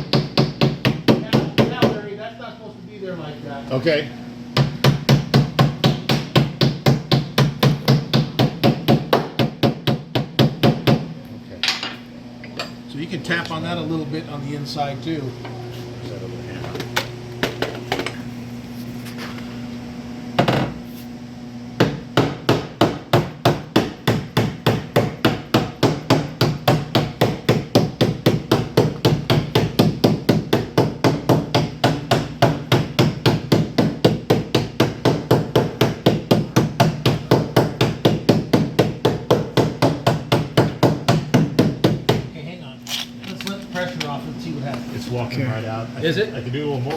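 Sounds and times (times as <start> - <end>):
hammer tapping on sheet metal: 0.0 - 2.0, 4.6 - 11.0, 21.8 - 42.3
steady hum: 0.0 - 46.9.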